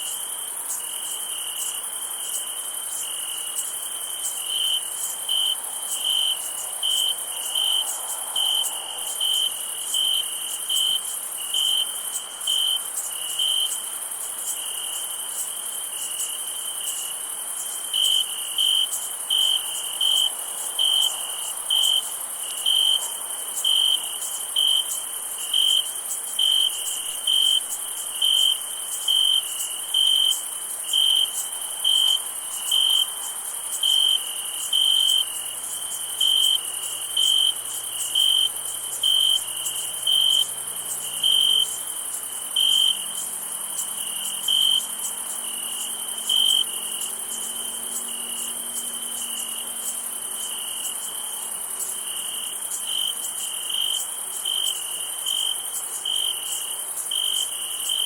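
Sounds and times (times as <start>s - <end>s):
cricket chirping: 0.0s - 58.0s
high-pitched insect chorus: 0.0s - 58.0s.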